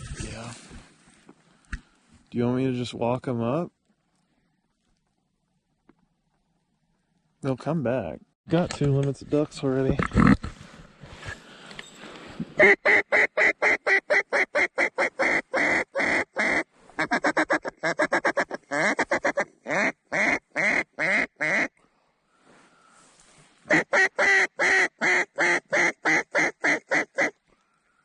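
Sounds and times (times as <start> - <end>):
duck call quacks: 12.6 - 21.7, 23.7 - 27.4.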